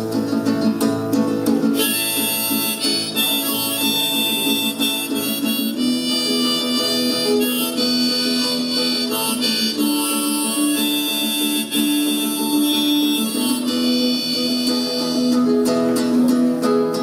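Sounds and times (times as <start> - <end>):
acoustic guitar: 0.0 - 17.0
harmonica long held notes: 1.7 - 16.3.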